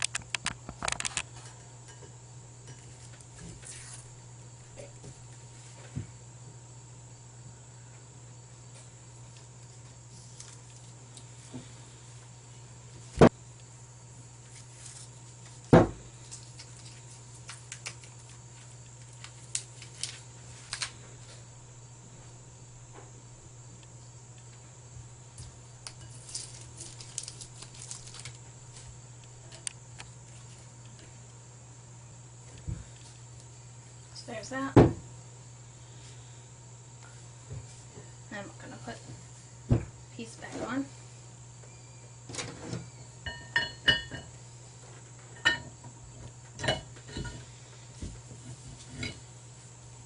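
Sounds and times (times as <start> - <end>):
tape peeling and crumpling: 14.4 - 21.0, 25.9 - 28.9.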